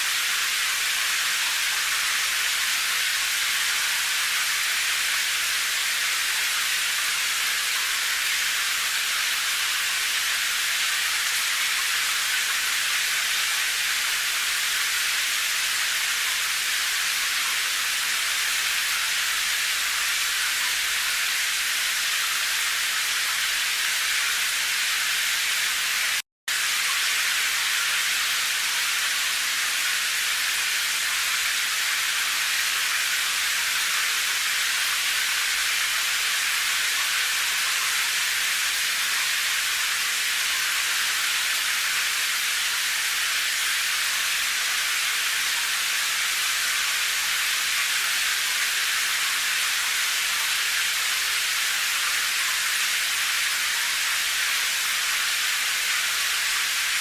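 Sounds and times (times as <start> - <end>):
steady rain: 0.0 - 57.0.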